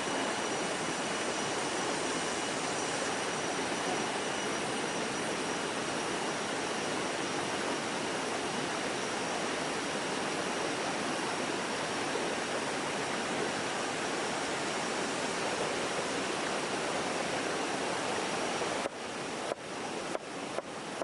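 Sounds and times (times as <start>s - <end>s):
stream rushing: 0.0s - 21.0s.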